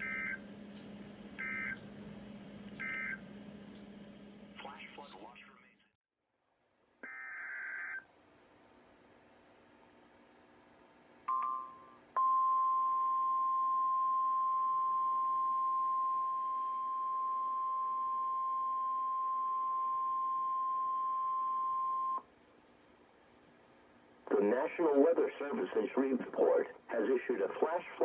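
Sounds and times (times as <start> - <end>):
high warning alarm tone: 0.0 - 0.4, 1.4 - 1.8, 2.8 - 3.2.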